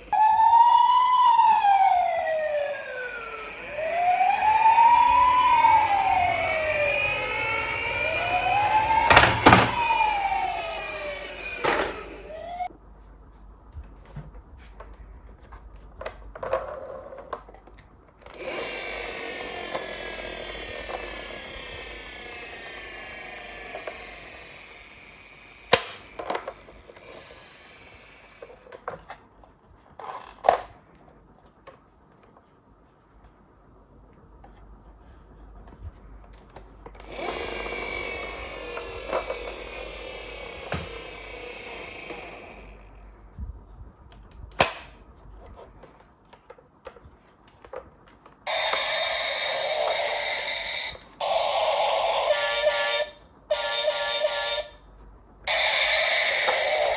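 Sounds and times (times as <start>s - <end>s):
electronic toy siren: 0.0s - 12.7s, 18.4s - 28.8s, 37.0s - 43.0s, 48.5s - 54.9s, 55.5s - 56.9s
toy whirring: 0.0s - 12.7s, 16.4s - 30.7s, 36.4s - 43.4s, 47.6s - 54.8s, 55.5s - 56.9s.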